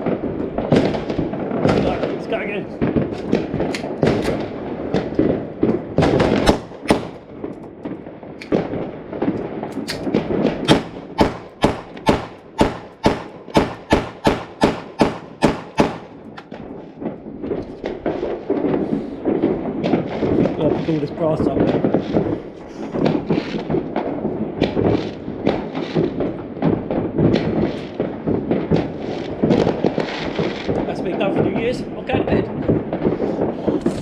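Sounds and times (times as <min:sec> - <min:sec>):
pistol shots: 0:00.0 - 0:16.7
fireworks crackling and booming: 0:00.0 - 0:34.0.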